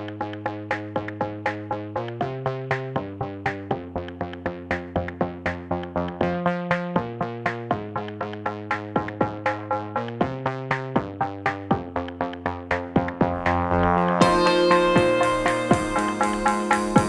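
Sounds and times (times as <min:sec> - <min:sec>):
electronic synthesizer music: 0:00.0 - 0:17.0.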